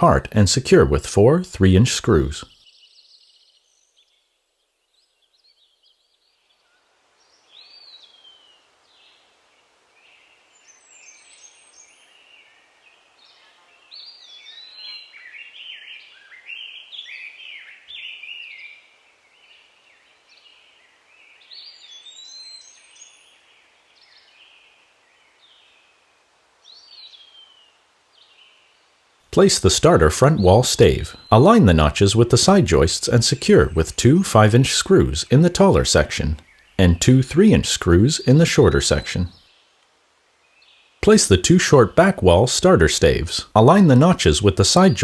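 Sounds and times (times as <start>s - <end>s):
birds chirping and calling: 29.4s - 39.4s, 41.2s - 45.0s.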